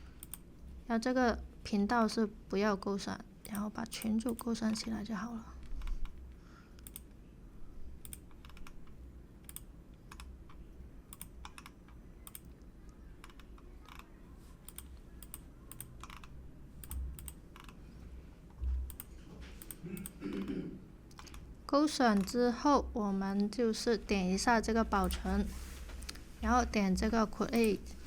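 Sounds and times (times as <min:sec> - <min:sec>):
faint low hum: 0:00.0 - 0:28.0
computer input clicks: 0:00.2 - 0:00.5, 0:03.4 - 0:05.0, 0:06.8 - 0:07.1, 0:08.0 - 0:12.6, 0:13.2 - 0:17.8, 0:18.9 - 0:20.2, 0:21.1 - 0:21.4, 0:22.1 - 0:22.4, 0:25.0 - 0:25.3, 0:27.5 - 0:27.9.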